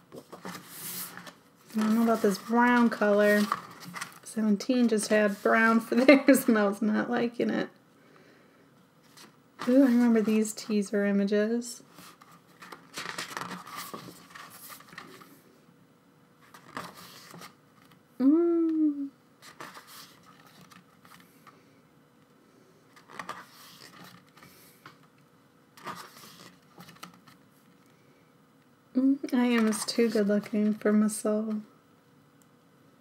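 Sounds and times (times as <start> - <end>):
paper pages rustling: 0.1 - 6.6, 9.0 - 10.8, 11.9 - 15.4, 16.4 - 18.0, 19.4 - 21.5, 22.9 - 25.1, 25.8 - 27.8, 29.4 - 31.1.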